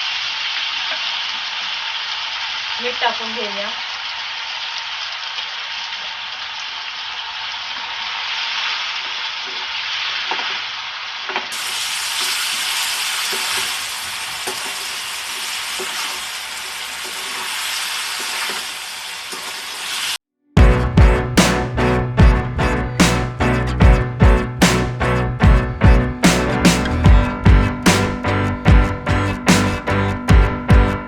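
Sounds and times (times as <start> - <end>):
onion and tomato sizzling in oil: 0.0 - 20.2.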